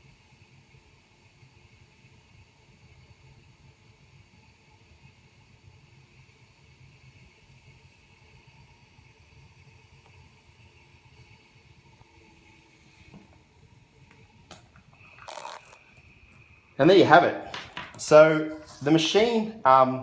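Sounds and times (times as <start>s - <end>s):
blower motor whir: 7.3s - 18.9s.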